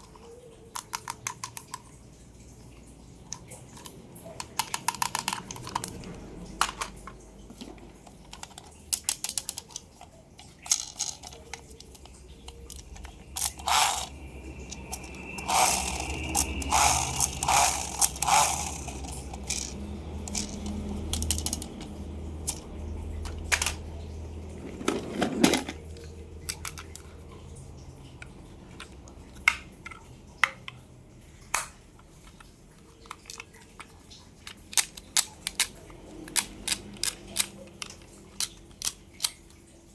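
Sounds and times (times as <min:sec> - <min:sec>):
clicks and taps of toys: 0:00.0 - 0:01.9, 0:03.3 - 0:14.1, 0:14.7 - 0:22.6.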